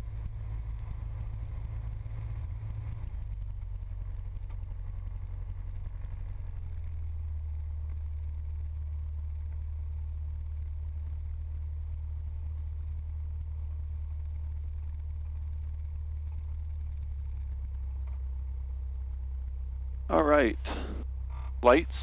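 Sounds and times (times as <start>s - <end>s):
aircraft piston engine idling: 12.9s - 22.0s.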